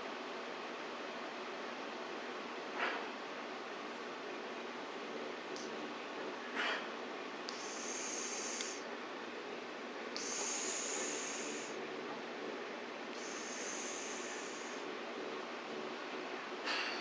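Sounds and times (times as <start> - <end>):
cat snoring: 7.5 - 8.8, 10.2 - 11.8, 13.2 - 14.8.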